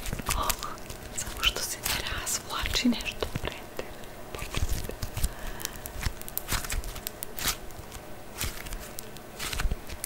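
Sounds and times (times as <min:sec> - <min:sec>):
putty smacking: 0:03.2 - 0:10.0
sticky putty crackling and clicking: 0:04.3 - 0:10.0.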